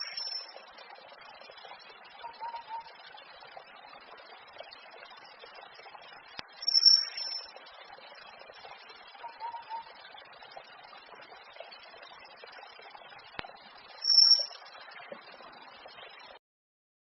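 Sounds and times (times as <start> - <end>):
bird calls: 0.0 - 0.5, 2.2 - 3.0, 6.6 - 7.5, 9.2 - 10.0, 14.0 - 14.6
steady background hiss: 0.0 - 12.8, 13.5 - 15.5.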